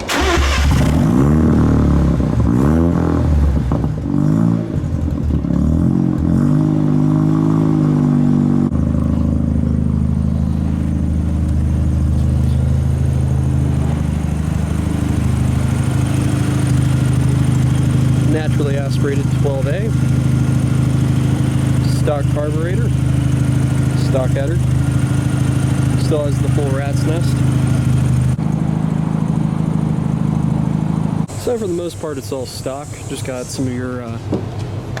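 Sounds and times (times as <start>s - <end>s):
rotary engine revving and idling: 0.0s - 35.0s.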